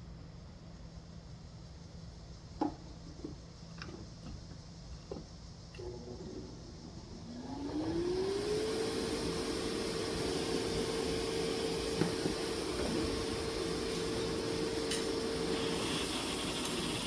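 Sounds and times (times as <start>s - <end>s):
blower rushing: 5.8s - 17.0s.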